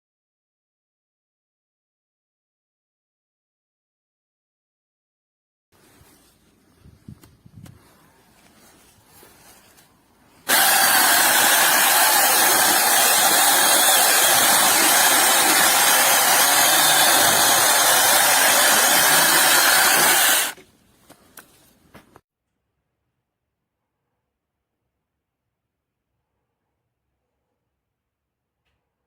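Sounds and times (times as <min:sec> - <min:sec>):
chainsaw whining: 0:10.5 - 0:20.6.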